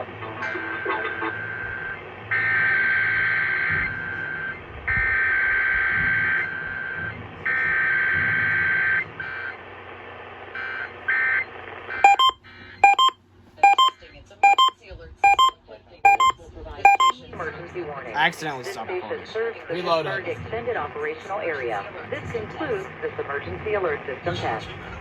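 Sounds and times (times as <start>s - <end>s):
sharp electronic beeps: 12.0s - 17.2s.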